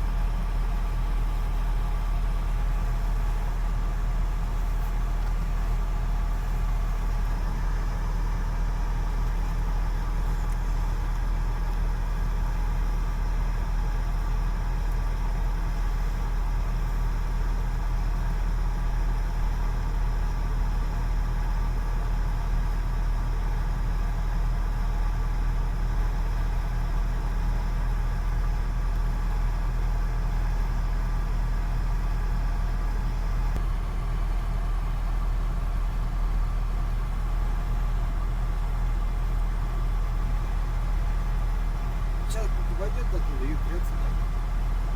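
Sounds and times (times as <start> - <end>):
diesel engine running: 39.2 - 44.9.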